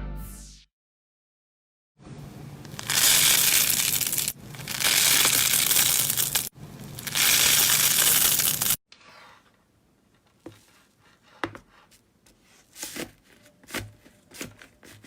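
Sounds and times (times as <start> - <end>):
slime squeezed and crunching: 2.7 - 8.8.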